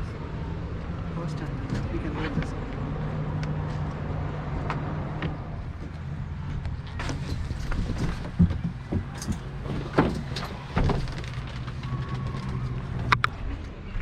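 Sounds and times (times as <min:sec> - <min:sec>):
low vehicle rumble: 0:00.0 - 0:14.0
gear knocking and thudding: 0:05.2 - 0:13.4.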